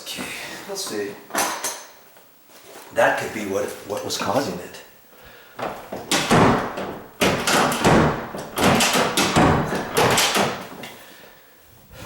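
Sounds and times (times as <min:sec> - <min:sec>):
door latch thudding shut: 0:05.6 - 0:10.8.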